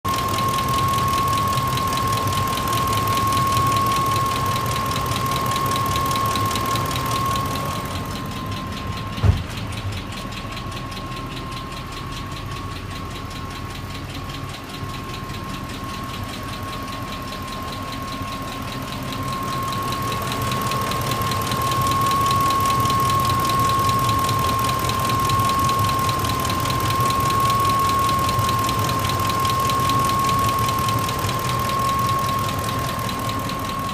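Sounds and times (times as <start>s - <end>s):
high whine: 0.1s - 13.4s
engine idling with ticking knock: 0.1s - 33.9s.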